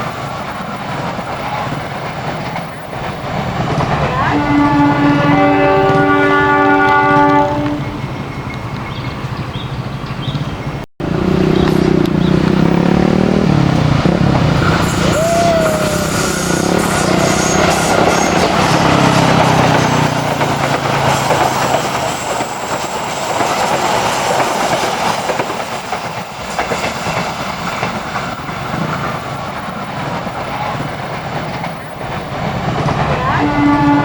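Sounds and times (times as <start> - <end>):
train wheels on rails: 0.0 - 34.0
locomotive horn: 4.0 - 8.0, 14.5 - 21.5, 33.1 - 34.0.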